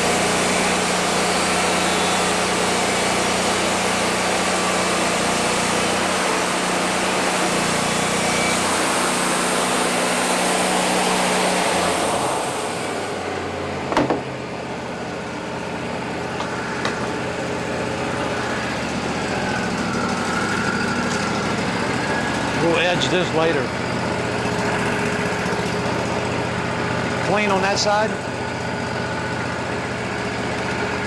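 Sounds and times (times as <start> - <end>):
sawmill engine running: 0.0 - 31.0
sharp knock: 13.9 - 14.3.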